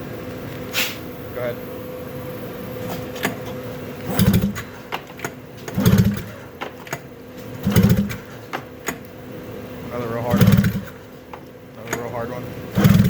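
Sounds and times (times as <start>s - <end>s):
engine turning over with pull-starter: 4.0s - 9.0s, 10.2s - 11.1s, 11.8s - 13.0s.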